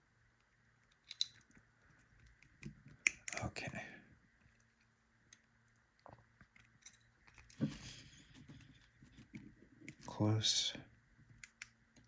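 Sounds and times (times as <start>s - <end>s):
metal tools clicking and scraping: 6.8s - 7.6s.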